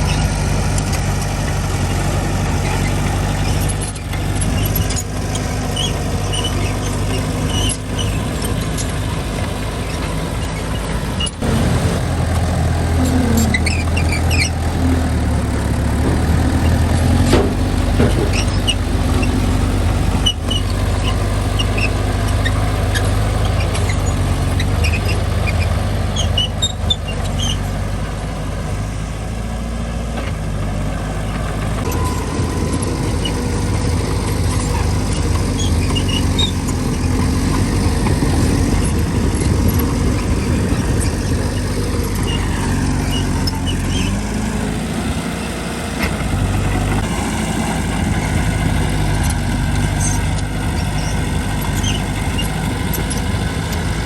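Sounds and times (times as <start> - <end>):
bulldozer diesel engine running: 0.0 - 54.0
short high squeaks: 2.6 - 9.0, 12.9 - 15.4, 16.1 - 27.8, 31.3 - 45.6, 49.1 - 54.0.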